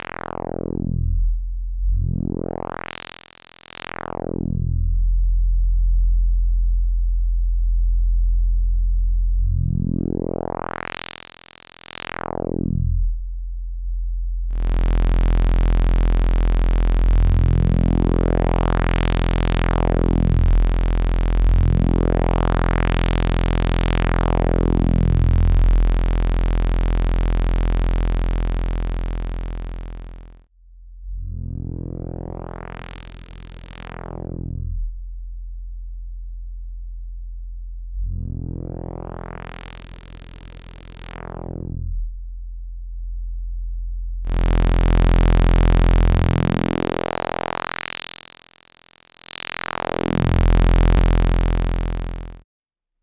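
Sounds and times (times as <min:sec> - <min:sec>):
buzzy synthesizer filter sweep: 0:14.5 - 0:30.4, 0:31.7 - 0:34.8, 0:38.2 - 0:41.9, 0:44.3 - 0:52.4.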